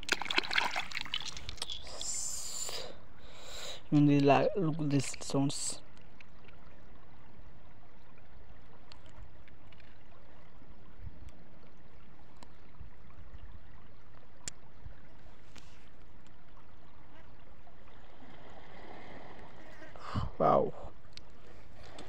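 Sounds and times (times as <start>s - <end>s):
flowing river water: 0.0s - 22.0s
faint clicks: 8.8s - 10.0s.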